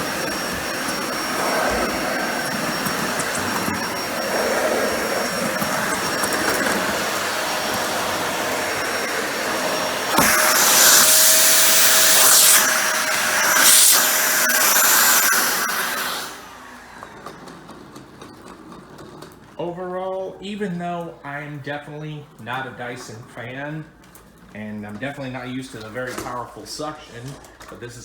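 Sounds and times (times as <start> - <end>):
upright vacuum running: 0.0 - 19.6.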